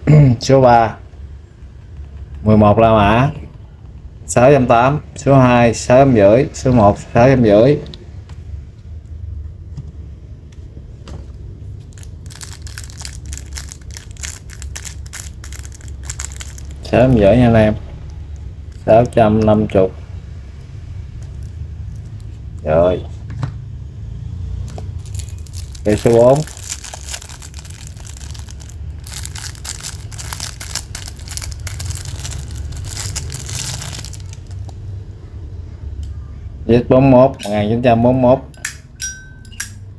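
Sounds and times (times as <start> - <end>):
packaging crinkling: 11.8 - 16.9, 24.7 - 34.7.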